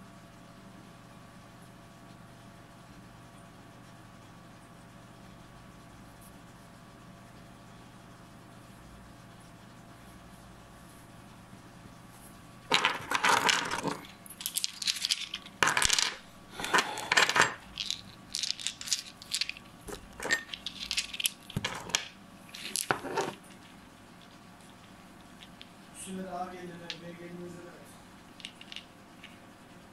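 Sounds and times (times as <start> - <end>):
small stones clinking together: 12.7 - 23.4, 28.4 - 29.4.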